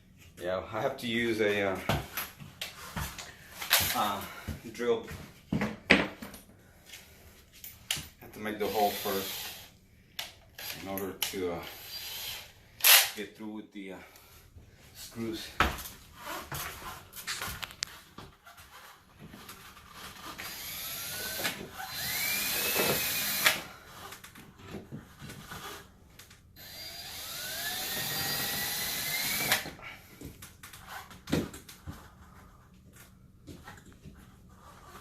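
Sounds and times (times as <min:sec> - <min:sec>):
power drill whining: 0:08.6 - 0:09.7, 0:10.6 - 0:10.8, 0:11.6 - 0:13.0, 0:20.2 - 0:24.1, 0:26.6 - 0:29.8.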